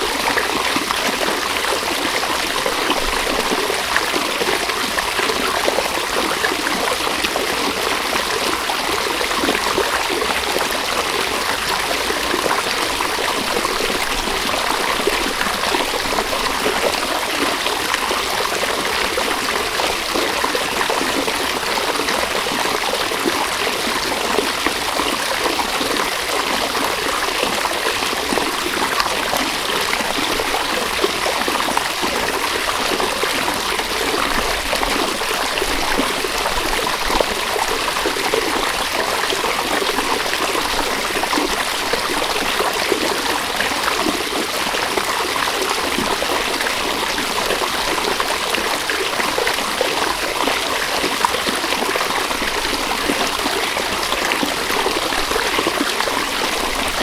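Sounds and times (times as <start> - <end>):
river water over stones: 0.0 - 57.0.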